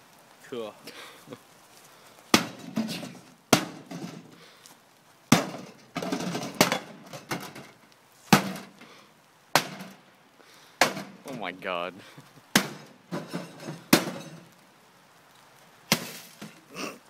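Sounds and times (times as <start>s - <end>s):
rattle of broken pieces: 5.4s - 7.8s, 13.1s - 14.5s.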